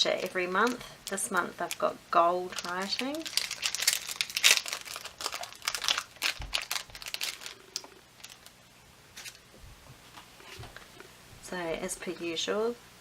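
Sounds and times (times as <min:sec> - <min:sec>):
plastic packaging crinkling: 0:00.0 - 0:09.4.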